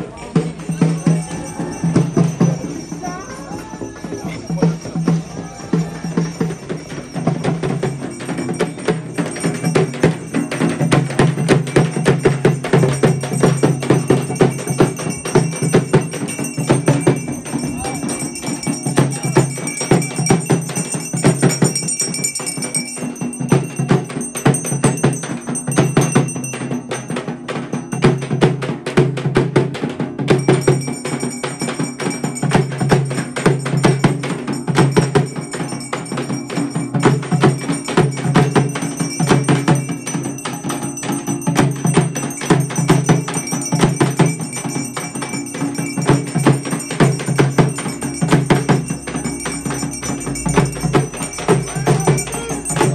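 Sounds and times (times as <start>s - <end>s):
fast shaker percussion: 0.0s - 52.9s.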